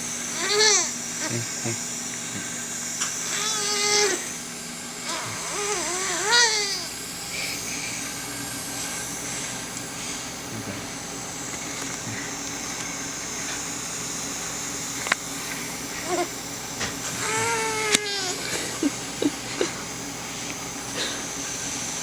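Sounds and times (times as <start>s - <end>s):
baby crying: 0.4s - 1.6s, 3.3s - 4.3s, 5.0s - 6.9s, 17.2s - 19.8s.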